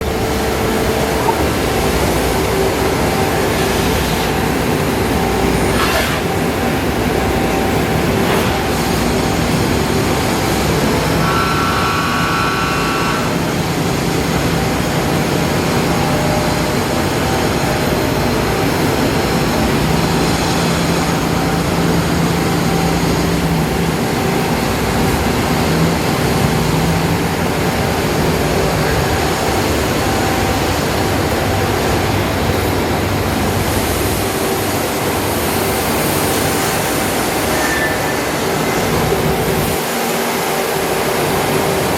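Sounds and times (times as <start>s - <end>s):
lathe machine drone: 0.0s - 41.9s
short high whine: 11.0s - 13.7s.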